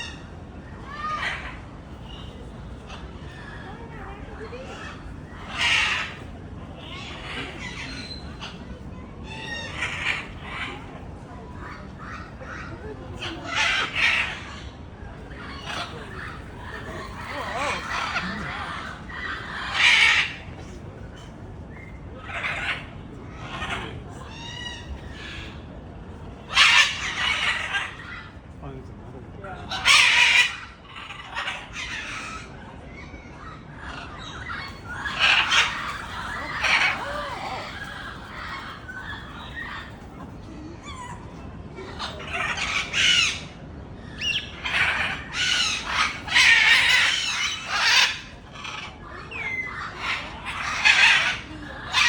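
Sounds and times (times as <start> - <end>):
parrots squawking: 0.8 - 8.6, 9.3 - 10.8, 13.1 - 14.6, 15.3 - 20.6, 22.2 - 25.6, 26.5 - 28.4, 29.7 - 32.5, 33.8 - 52.0
drawn-out mewing call: 34.7 - 40.4.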